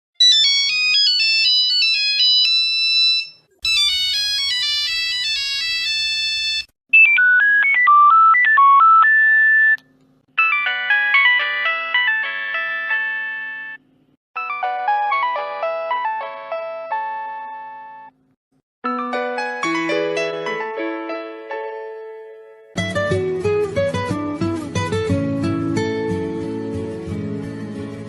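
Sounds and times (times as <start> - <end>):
phone ringtone melodies: 0.2 - 9.8, 10.4 - 13.8, 14.4 - 18.1.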